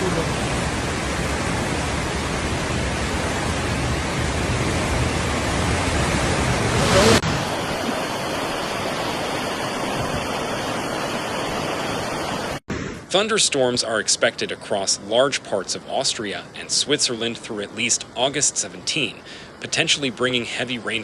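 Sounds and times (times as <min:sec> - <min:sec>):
floodwater rushing: 0:00.0 - 0:12.6, 0:13.2 - 0:21.0.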